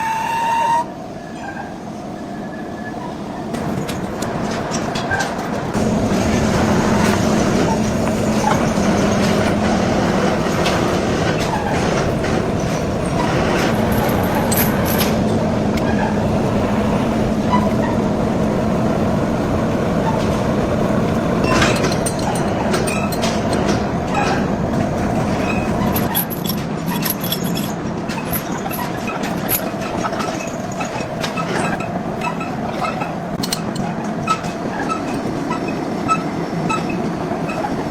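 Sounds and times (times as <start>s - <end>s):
lathe humming and grinding: 5.7s - 26.1s.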